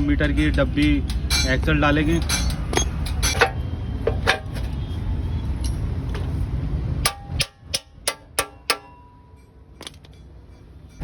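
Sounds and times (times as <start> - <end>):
metal-on-metal clinks: 0.4 - 3.5.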